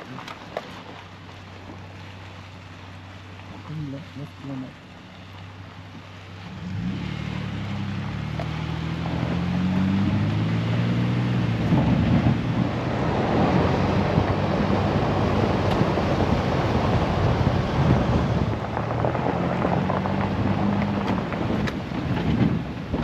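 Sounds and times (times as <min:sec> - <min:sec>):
rough trail noise: 0:00.0 - 0:23.0
utility vehicle engine running: 0:00.0 - 0:23.0
wind buffeting microphone: 0:06.9 - 0:23.0.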